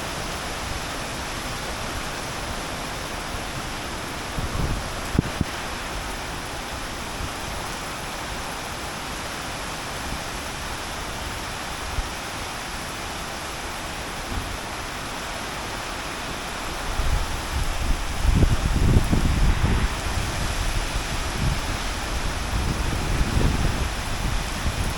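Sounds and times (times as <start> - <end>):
heavy rain hissing: 0.0 - 24.9
wind buffeting microphone: 4.1 - 6.3, 16.8 - 24.9.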